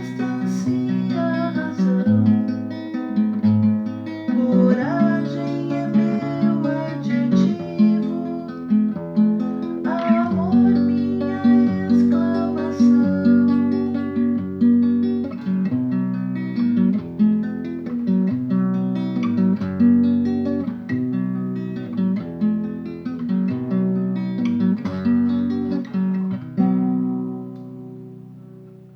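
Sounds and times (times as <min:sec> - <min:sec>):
acoustic guitar picking chords: 0:00.0 - 0:28.9.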